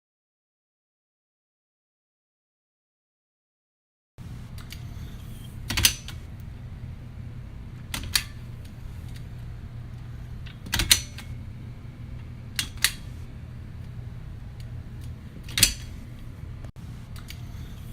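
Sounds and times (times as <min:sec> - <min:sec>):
safety gate latch clicks and rattles: 0:05.7 - 0:06.3, 0:07.9 - 0:09.3, 0:10.5 - 0:11.4, 0:12.5 - 0:13.2, 0:14.6 - 0:16.2.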